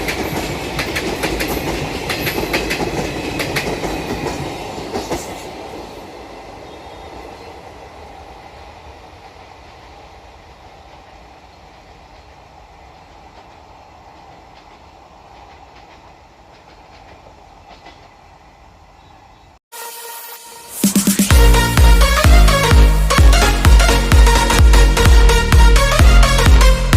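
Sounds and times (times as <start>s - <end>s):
faint train clatter: 0.0s - 6.1s, 6.7s - 19.3s
train wheels rumbling on rails: 0.0s - 18.8s.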